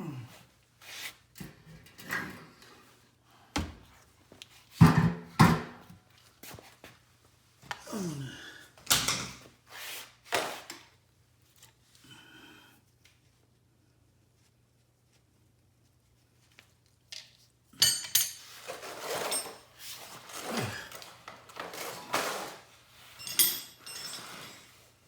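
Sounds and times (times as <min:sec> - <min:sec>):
metal clunks and knocks: 0:04.8 - 0:05.9.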